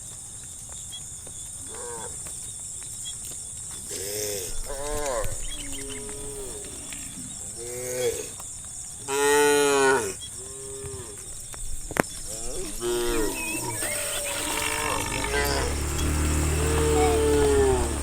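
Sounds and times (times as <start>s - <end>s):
cattle mooing: 4.6s - 8.3s, 12.4s - 18.0s.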